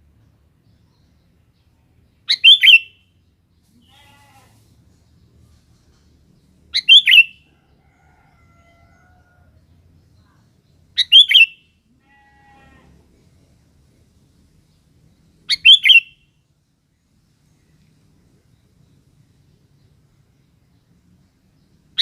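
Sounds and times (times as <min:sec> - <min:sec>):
bulbul singing: 0:02.2 - 0:03.2, 0:06.7 - 0:07.4, 0:10.9 - 0:11.7, 0:15.5 - 0:16.3.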